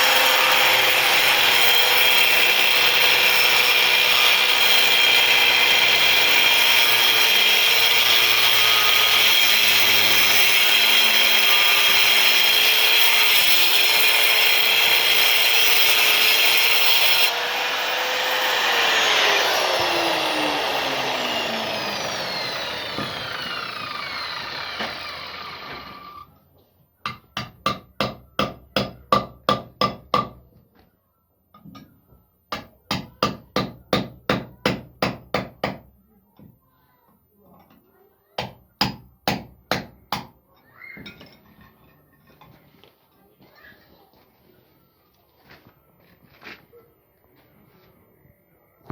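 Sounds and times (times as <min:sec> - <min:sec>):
power tool cutting wood: 0:00.0 - 0:26.3.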